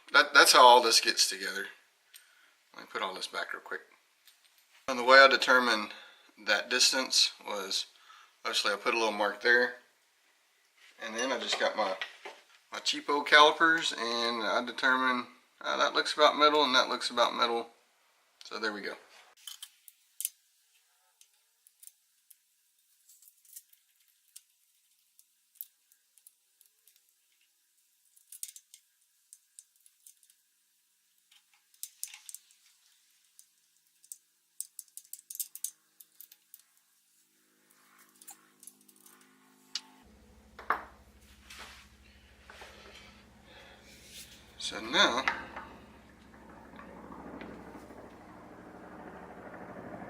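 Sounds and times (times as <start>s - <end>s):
metal parts and tools clinking: 19.4s - 20.4s, 23.0s - 24.5s, 28.1s - 28.8s, 31.3s - 32.7s, 33.4s - 36.8s, 37.9s - 39.3s
low-flying aircraft drone: 45.3s - 50.0s.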